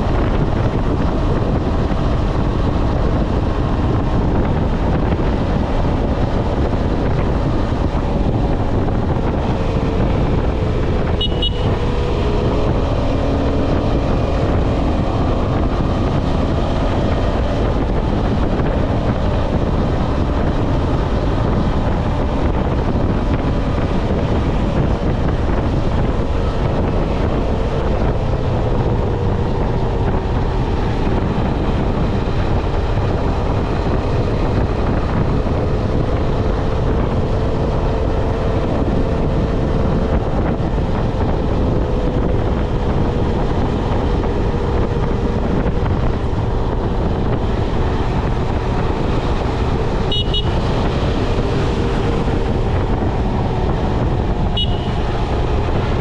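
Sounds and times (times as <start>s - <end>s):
motorcycle engine cruising: 0.0s - 56.0s
wind rushing over microphone: 0.0s - 56.0s.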